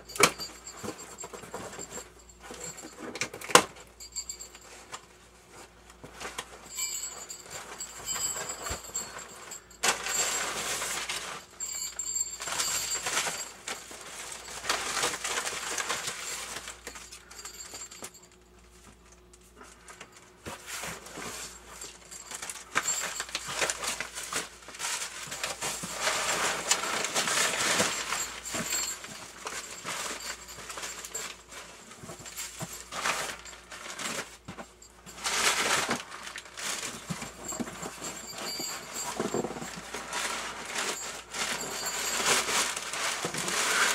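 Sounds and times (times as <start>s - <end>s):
packaging rustling and scraping: 0.0s - 43.9s.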